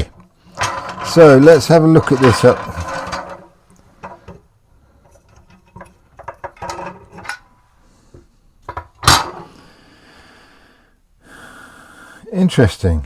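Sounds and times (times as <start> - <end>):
metal parts clicking and clinking: 0.0 - 4.4, 5.0 - 7.5, 8.7 - 9.4.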